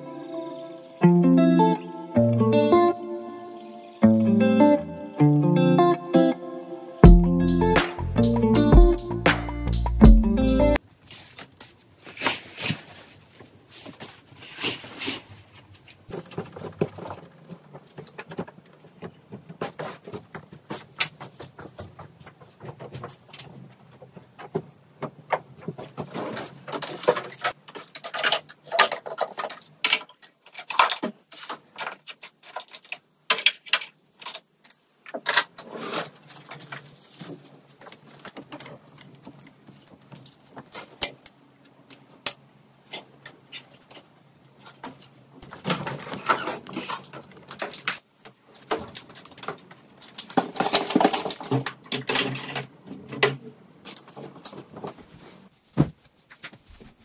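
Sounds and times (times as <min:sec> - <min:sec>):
soft rustling: 0:11.0 - 0:17.9, 0:54.0 - 0:57.0
household objects clicking and knocking: 0:16.1 - 0:55.0.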